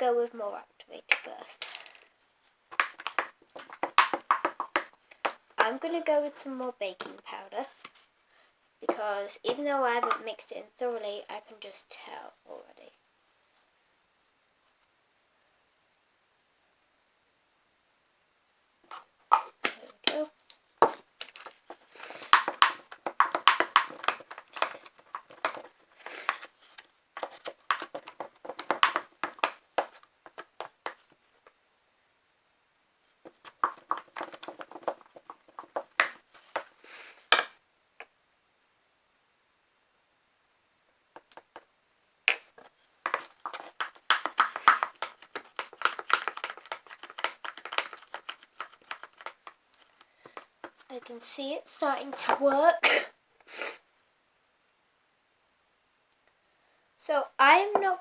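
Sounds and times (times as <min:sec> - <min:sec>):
spoon stirring sticky slime: 0:20.9 - 0:26.6, 0:27.2 - 0:31.1, 0:33.3 - 0:36.7, 0:42.3 - 0:51.1.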